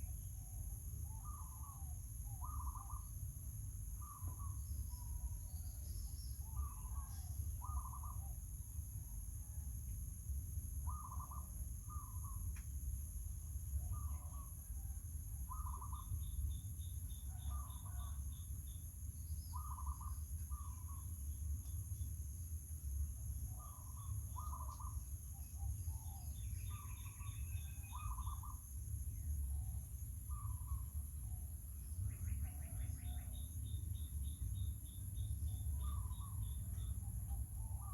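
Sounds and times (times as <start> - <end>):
birds calling: 23.6 - 24.9
bird trills: 23.6 - 25.0.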